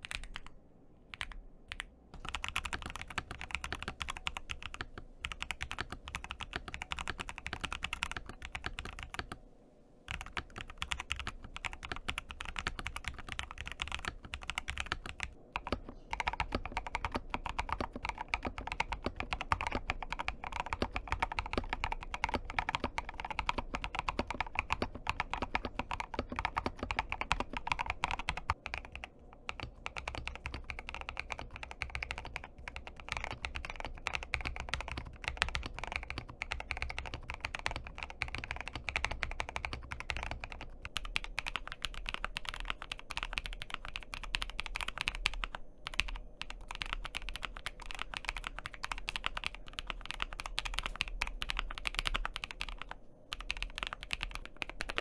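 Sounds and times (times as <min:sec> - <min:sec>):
mechanical keyboard typing: 0:00.0 - 0:09.4, 0:10.1 - 0:55.0.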